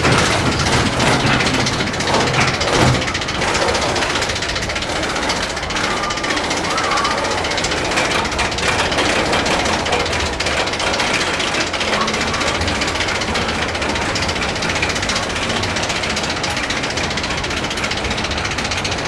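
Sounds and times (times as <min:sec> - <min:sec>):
ride machinery rapid clatter: 0:00.0 - 0:19.0.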